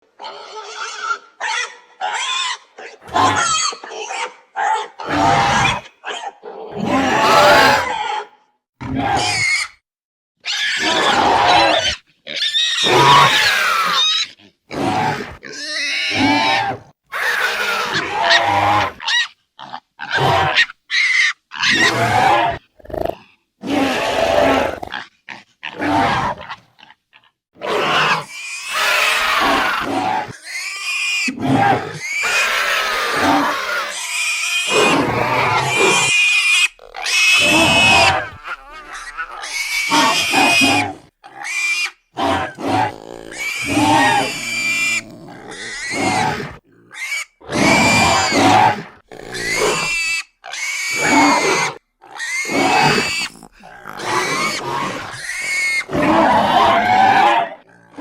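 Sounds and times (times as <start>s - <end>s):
pig-like squeals and grunts: 0.0s - 9.8s, 10.4s - 58.0s
monster screeches and growls: 5.0s - 5.9s, 6.8s - 8.1s, 8.8s - 9.8s, 10.5s - 12.0s, 27.6s - 57.6s.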